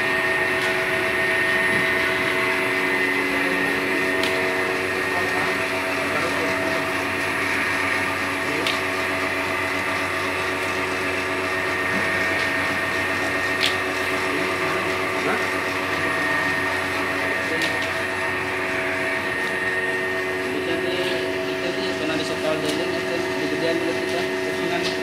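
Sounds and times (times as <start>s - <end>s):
machine motor humming: 0.0s - 25.0s.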